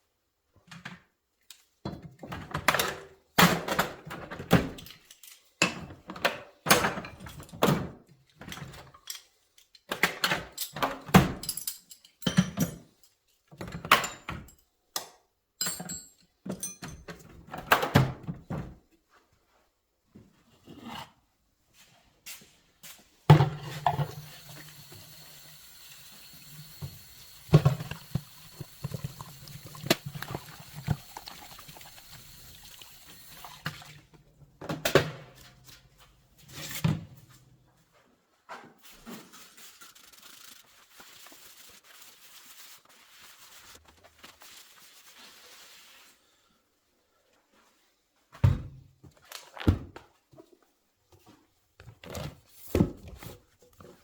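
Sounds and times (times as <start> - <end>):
objects knocking and clattering: 26.6 - 32.3.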